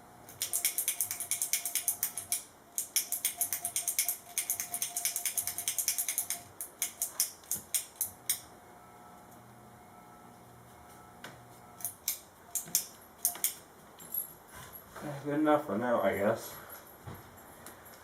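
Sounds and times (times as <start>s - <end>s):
hand cutters snipping wires: 0.3s - 8.4s, 11.8s - 13.6s.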